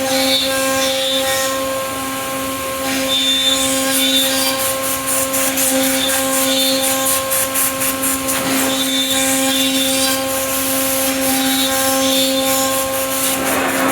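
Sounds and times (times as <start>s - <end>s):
rushing noise of cutting and air: 12.6s - 13.9s.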